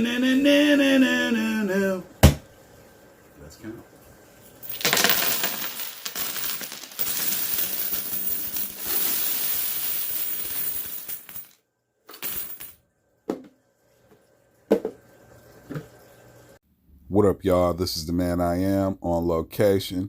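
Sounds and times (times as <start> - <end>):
coins clattering and clinking: 4.6 - 12.8.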